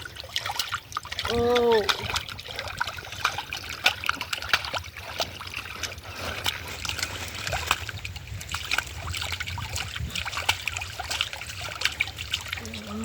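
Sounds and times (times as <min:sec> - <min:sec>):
hands splashing shallow water: 0:00.0 - 0:13.0
water trickling: 0:00.0 - 0:13.0.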